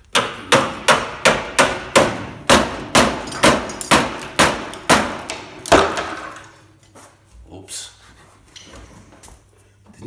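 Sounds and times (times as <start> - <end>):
hammer striking steel: 0.1 - 6.2.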